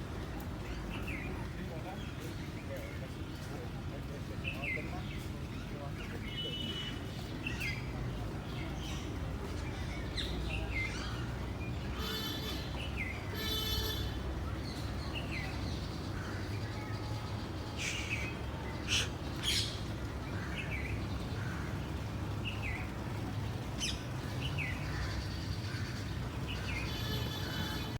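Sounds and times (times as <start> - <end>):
birds chirping: 0.6 - 27.9
buzzy bird calls: 9.0 - 27.9.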